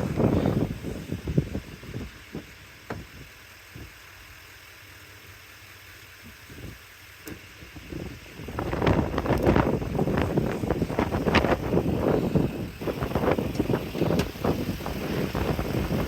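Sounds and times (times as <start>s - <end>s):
wind buffeting microphone: 0.0s - 4.0s, 7.5s - 16.0s.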